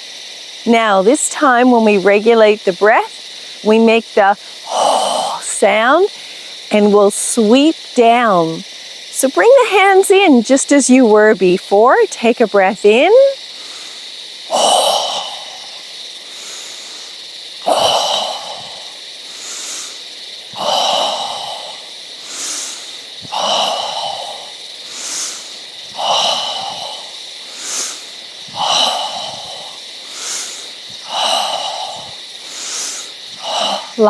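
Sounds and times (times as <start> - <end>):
hissing in-breaths: 0.0 - 34.0
person exhaling with whispered sound: 4.4 - 6.7, 13.3 - 34.0.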